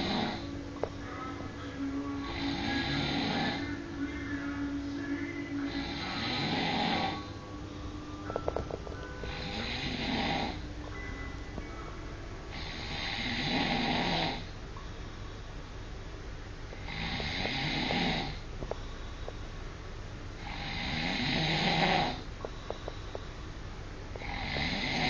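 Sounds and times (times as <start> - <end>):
person snoring: 0.0 - 8.2, 9.2 - 10.7, 12.5 - 14.5, 16.8 - 18.4, 20.4 - 22.3, 24.2 - 25.0.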